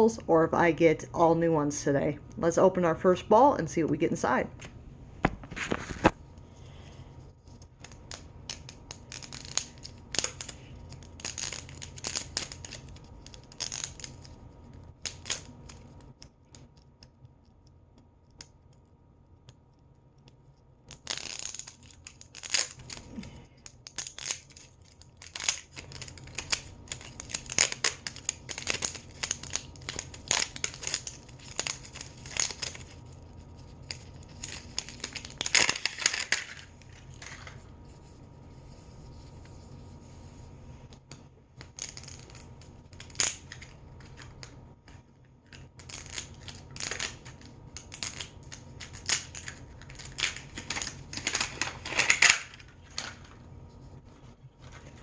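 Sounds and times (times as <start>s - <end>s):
plastic wrapping crinkling: 24.0s - 40.2s.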